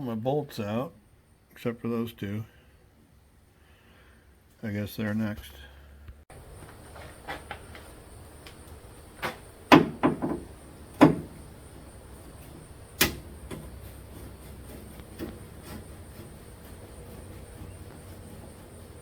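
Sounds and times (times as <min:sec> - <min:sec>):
tools knocking on steel: 0:09.7 - 0:11.4.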